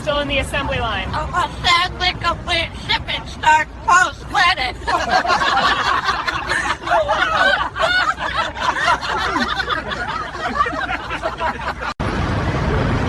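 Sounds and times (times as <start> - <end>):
people laughing: 4.7 - 12.0.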